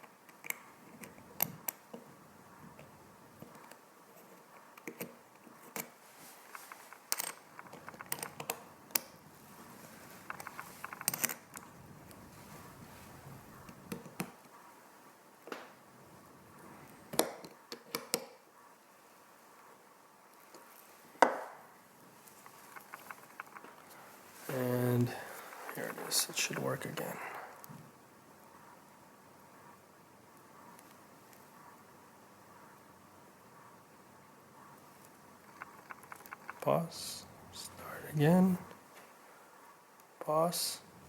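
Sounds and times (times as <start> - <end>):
screwdriver and watch parts clicking: 6.5 - 9.0, 10.2 - 11.4, 22.3 - 23.7, 35.4 - 36.8.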